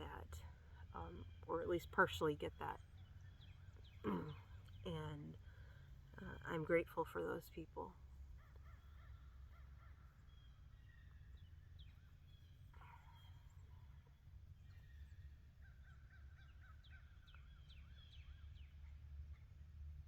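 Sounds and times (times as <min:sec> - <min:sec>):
birds chirping: 0:00.0 - 0:20.0.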